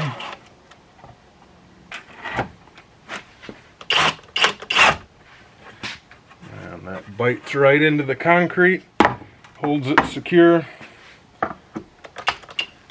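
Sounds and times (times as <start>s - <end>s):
drill driving screw into concrete: 3.8s - 5.0s.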